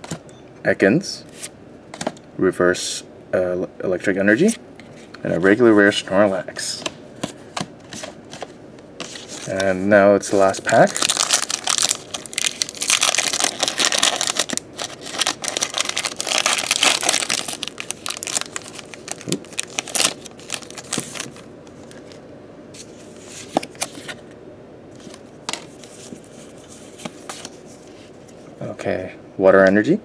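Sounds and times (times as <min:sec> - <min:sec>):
foil wrapper tearing and crinkling: 0:10.7 - 0:21.4.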